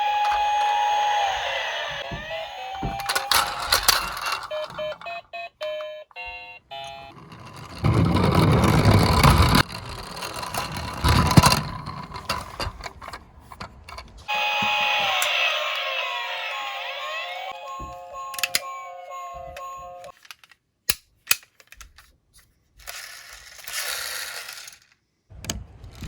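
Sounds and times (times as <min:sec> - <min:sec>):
toy siren wailing: 0:00.0 - 0:07.2, 0:14.3 - 0:20.1.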